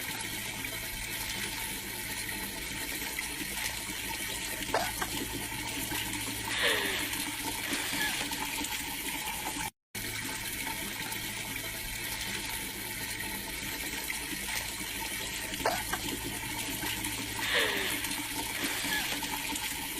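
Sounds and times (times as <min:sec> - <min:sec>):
running water rushing: 0:00.0 - 0:19.9.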